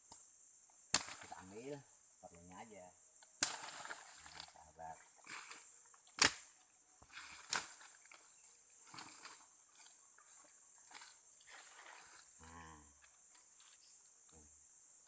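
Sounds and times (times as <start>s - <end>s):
high drone of forest insects: 0.0s - 15.0s
sharp woody cracks: 0.9s - 1.5s, 3.3s - 4.0s, 6.1s - 6.5s.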